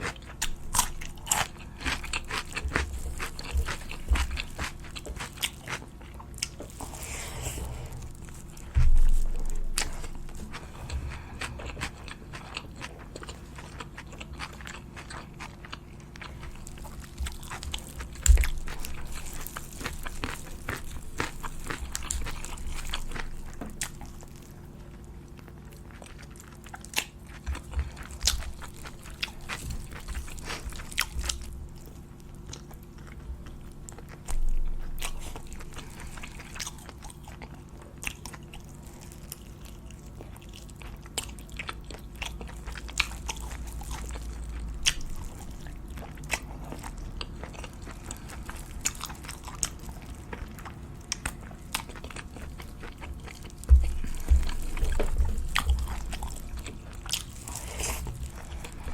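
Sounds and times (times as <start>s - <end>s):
person chewing crunchy food: 0.0s - 58.9s.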